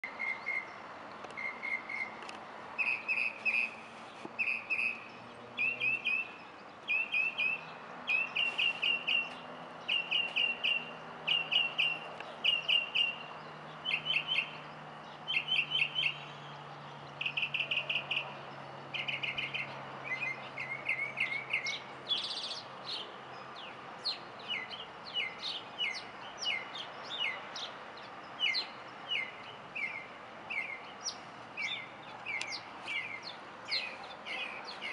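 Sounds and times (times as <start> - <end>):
songbirds chirping: 0.0 - 34.9
bright bird call: 0.1 - 2.2, 2.8 - 14.6, 15.3 - 16.5, 17.2 - 18.4, 28.4 - 34.9.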